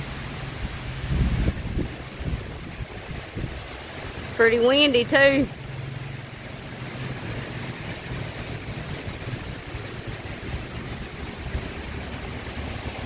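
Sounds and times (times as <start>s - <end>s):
gusting wind: 0.0s - 13.0s
heavy rain pouring: 0.0s - 13.0s.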